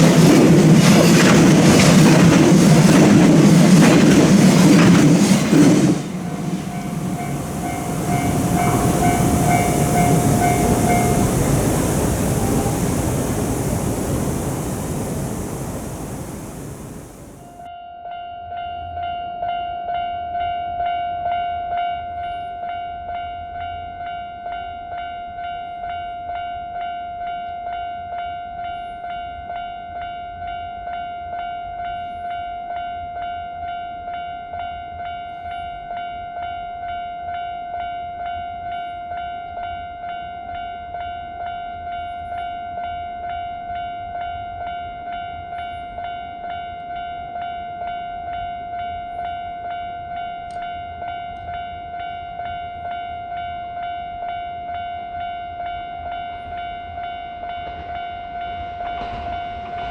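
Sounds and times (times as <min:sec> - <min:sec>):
level-crossing warning bell ringing: 0:00.0 - 0:17.6.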